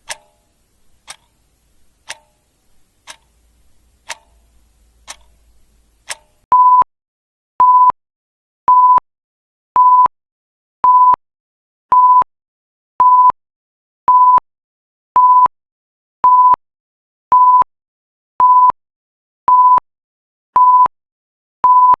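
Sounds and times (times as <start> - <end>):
clock tick: 0.0 - 6.5
repeated electronic timer beep: 6.1 - 6.9, 7.6 - 8.0, 8.7 - 9.0, 9.8 - 10.1, 10.8 - 11.2, 11.9 - 12.3, 13.0 - 13.4, 14.1 - 14.4, 15.2 - 15.5, 16.2 - 16.6, 17.3 - 17.7, 18.4 - 18.8, 19.5 - 19.8, 20.6 - 20.9, 21.6 - 22.0.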